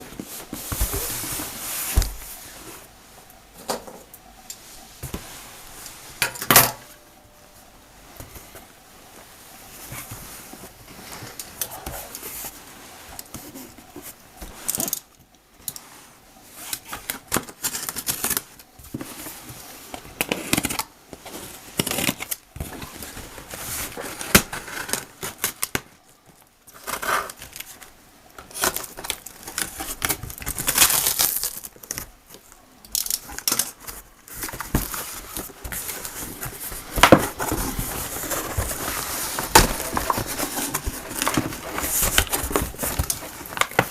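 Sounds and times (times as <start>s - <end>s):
packaging rustling and crinkling: 0.0s - 2.9s, 8.2s - 43.9s
packaging tearing: 28.5s - 32.1s.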